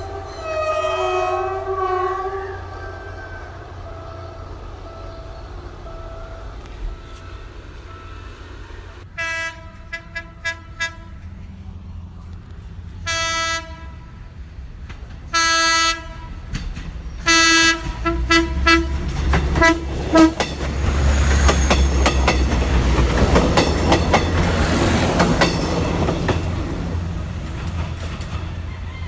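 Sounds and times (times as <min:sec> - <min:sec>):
train horn blasts: 0:00.0 - 0:11.5, 0:13.0 - 0:14.3, 0:15.3 - 0:16.6, 0:17.2 - 0:24.0
train wheels clacking on rails: 0:14.8 - 0:29.0.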